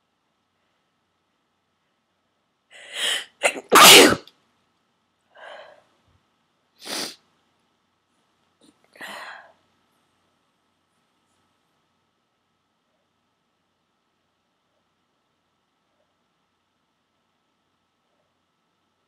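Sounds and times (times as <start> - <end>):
person breathing: 2.7 - 3.4, 5.3 - 6.0
person sneezing: 2.8 - 4.2, 6.8 - 7.2.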